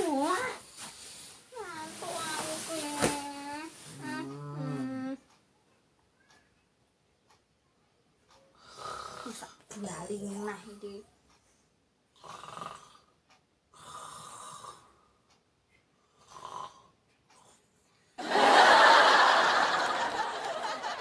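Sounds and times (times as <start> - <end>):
man snoring: 4.0 - 5.2, 8.6 - 9.4, 12.2 - 13.1, 13.7 - 15.0, 16.1 - 16.9.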